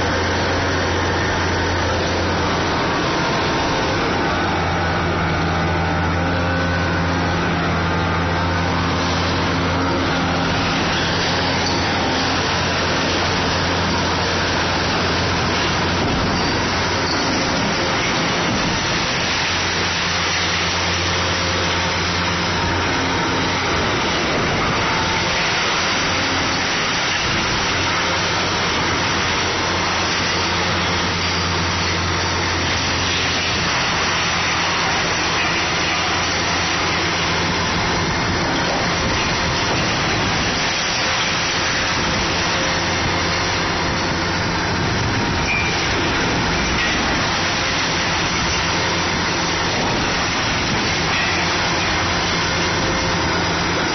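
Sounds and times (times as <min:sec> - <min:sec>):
steady rushing noise: 0:00.0 - 0:31.1
excavator diesel engine under load: 0:00.0 - 0:53.9.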